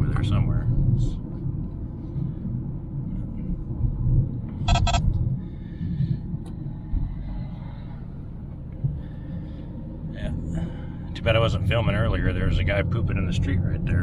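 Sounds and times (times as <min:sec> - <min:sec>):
car engine and road rumble: 0:00.0 - 0:14.0
high beeps: 0:04.7 - 0:05.0.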